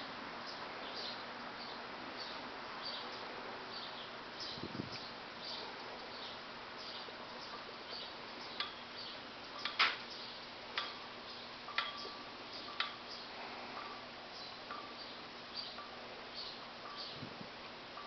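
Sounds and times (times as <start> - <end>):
steady hiss: 0.0 - 18.0
ceiling fan ticking: 3.9 - 18.0.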